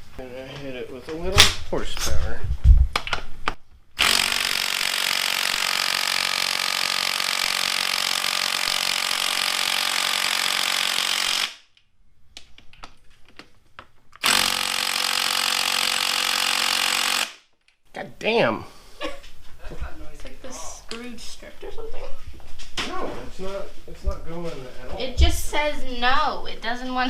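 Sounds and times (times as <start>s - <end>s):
impact driver running: 4.0s - 11.7s, 14.2s - 17.5s.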